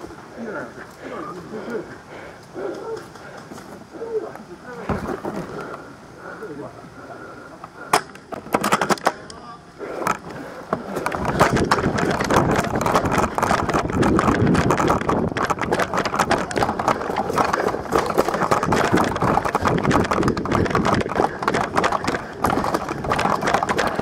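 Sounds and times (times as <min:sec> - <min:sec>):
rustling and clatter: 0:04.8 - 0:05.8, 0:08.3 - 0:09.2, 0:10.0 - 0:24.0
running footsteps on rough ground: 0:10.1 - 0:24.0.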